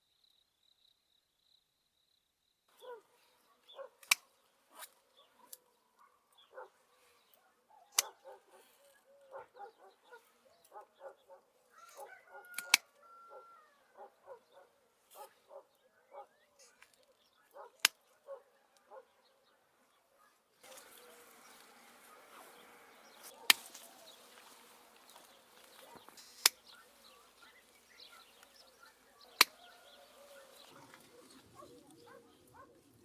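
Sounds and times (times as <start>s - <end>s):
fowl calling: 7.8s - 16.8s, 20.6s - 32.8s.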